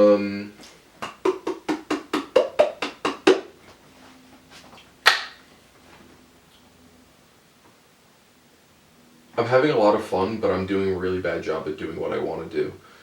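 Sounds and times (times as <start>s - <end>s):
sharp percussive hits: 1.0s - 3.6s.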